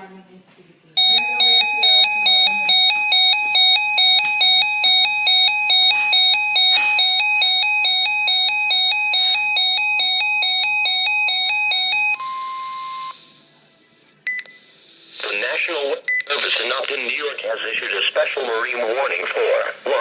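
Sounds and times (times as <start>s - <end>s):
steady alarm tone: 1.0s - 13.4s
warbling electronic alarm tone: 1.0s - 13.4s
radio static: 15.0s - 20.0s.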